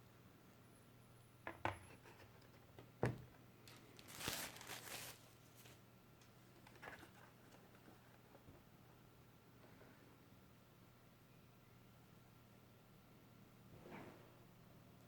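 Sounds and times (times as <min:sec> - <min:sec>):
rustling scrape: 0:03.7 - 0:05.8.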